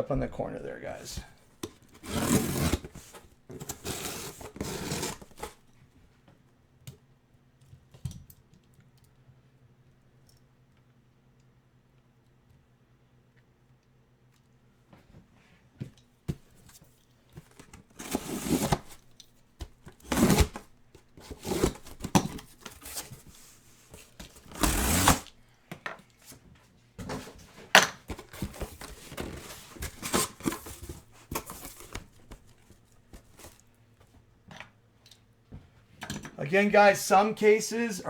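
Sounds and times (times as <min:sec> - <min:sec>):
cardboard tearing and rustling: 0:01.2 - 0:05.6, 0:17.4 - 0:25.4, 0:28.0 - 0:33.6.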